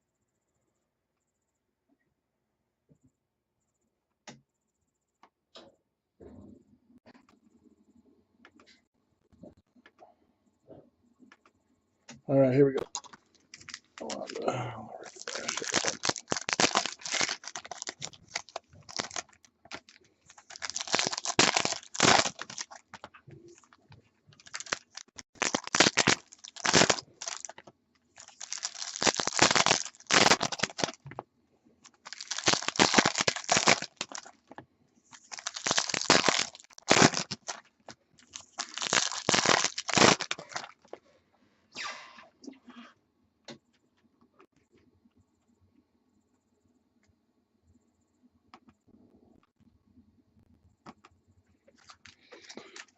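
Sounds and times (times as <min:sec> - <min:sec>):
foil wrappers tearing and crinkling: 0:13.0 - 0:14.4, 0:15.0 - 0:23.0, 0:24.4 - 0:27.6, 0:28.2 - 0:31.0, 0:31.9 - 0:34.3, 0:35.1 - 0:40.8.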